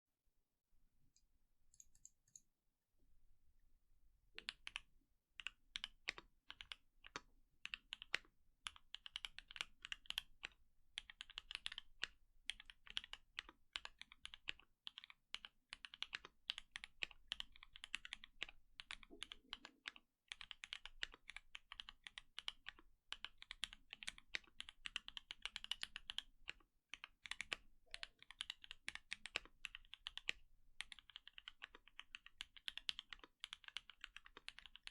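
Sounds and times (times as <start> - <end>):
mechanical keyboard typing: 11.0 - 34.9.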